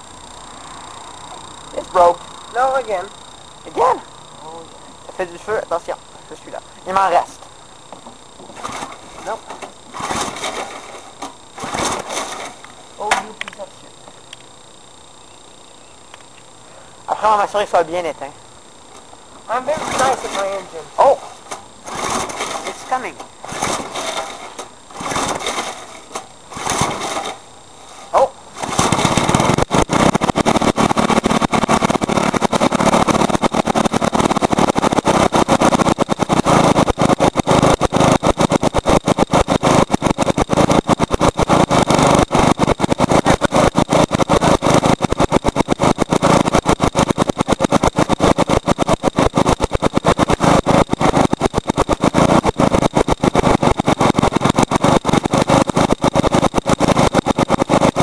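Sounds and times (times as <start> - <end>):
lawnmower engine running fast: 0.0 - 13.4, 19.0 - 58.0
lawnmower engine sputtering: 0.0 - 14.6, 17.0 - 58.0.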